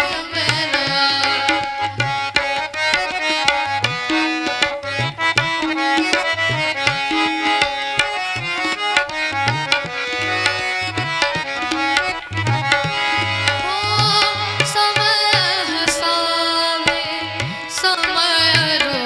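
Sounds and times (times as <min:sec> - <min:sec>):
hand drum rhythm: 0:02.9 - 0:16.1.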